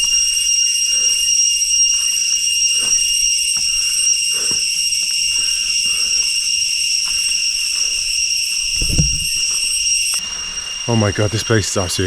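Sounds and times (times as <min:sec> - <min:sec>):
insects droning: 0:00.0 - 0:12.0
low thump: 0:08.8 - 0:09.5.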